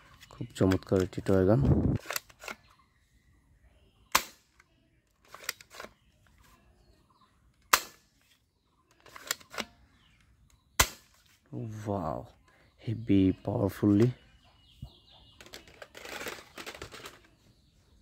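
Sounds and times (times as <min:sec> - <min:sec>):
toy gun cocking clicks: 0:02.0 - 0:02.6
toy gun snapping: 0:02.0 - 0:02.6, 0:09.0 - 0:09.8.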